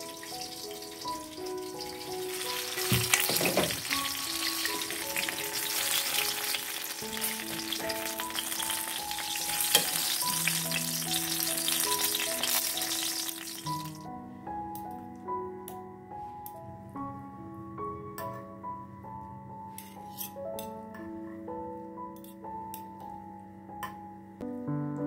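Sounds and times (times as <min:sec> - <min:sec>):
food sizzling in a pan: 0:00.0 - 0:14.1
light background music: 0:00.0 - 0:25.0.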